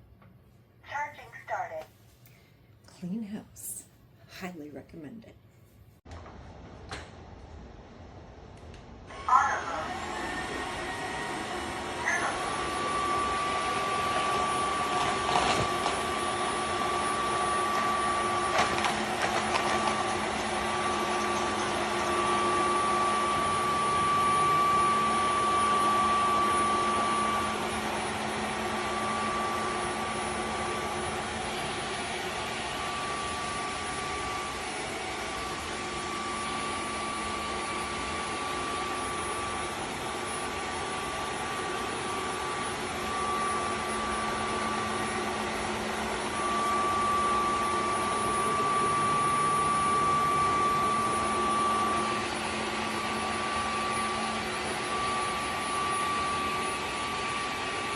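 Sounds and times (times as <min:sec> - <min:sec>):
vacuum mop motor humming: 0:09.1 - 0:57.9.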